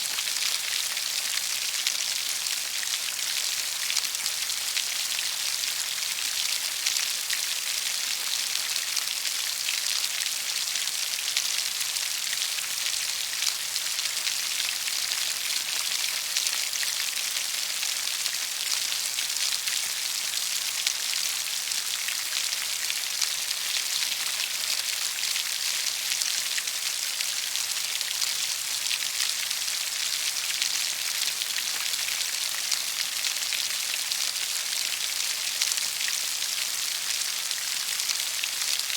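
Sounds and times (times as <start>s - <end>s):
steady rain pattering: 0.0s - 38.9s.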